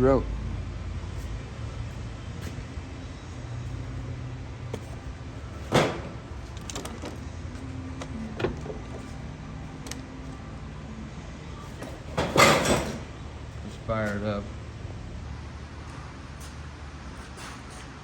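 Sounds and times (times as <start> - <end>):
knocks and clunks on vehicle: 5.6 - 9.1
clattering thump: 5.7 - 7.2.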